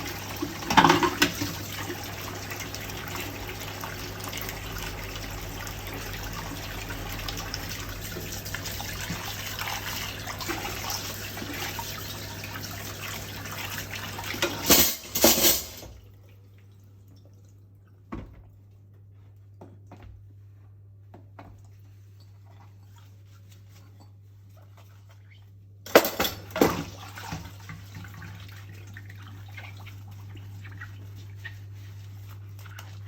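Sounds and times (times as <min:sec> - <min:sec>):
tap running water into sink: 0:00.0 - 0:16.0.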